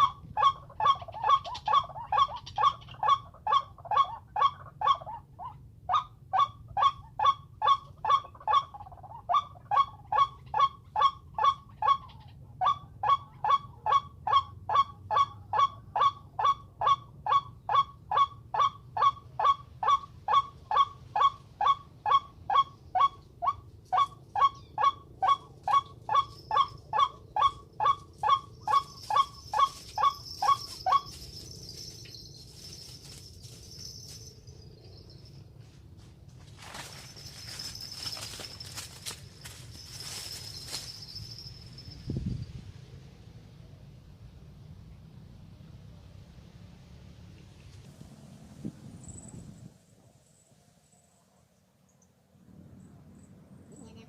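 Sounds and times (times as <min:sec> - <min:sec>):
bird honking calls: 0:00.0 - 0:34.1.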